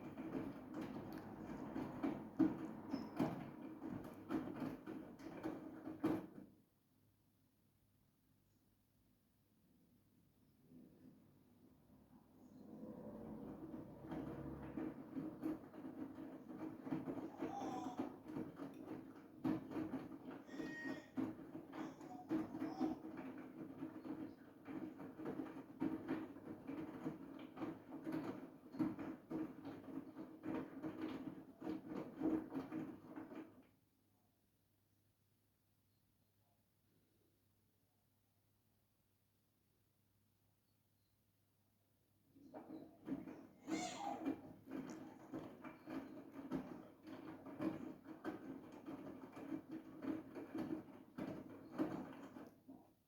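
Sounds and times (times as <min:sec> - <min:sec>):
laundry and water sloshing: 0:00.0 - 0:06.0, 0:13.1 - 0:33.5
washing machine running: 0:00.0 - 0:06.5, 0:11.1 - 0:33.6, 0:42.4 - 0:53.0
washing machine drum turning: 0:13.6 - 0:30.8.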